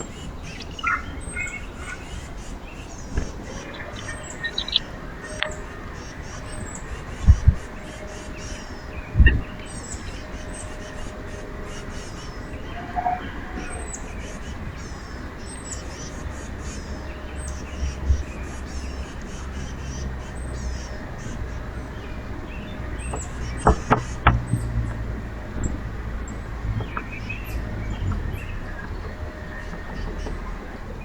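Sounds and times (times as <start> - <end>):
birds chirping: 0.0 - 31.0
dull low thumps: 7.1 - 8.0, 9.0 - 9.6.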